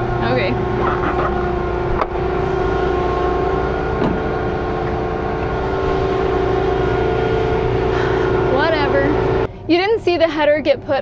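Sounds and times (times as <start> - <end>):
combine harvester running: 0.0 - 11.0.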